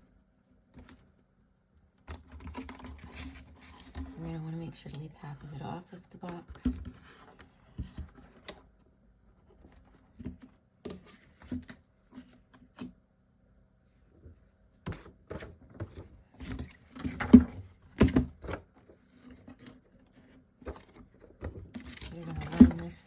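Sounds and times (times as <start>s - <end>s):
box and vinyl rustling: 2.1s - 8.8s, 14.0s - 23.0s.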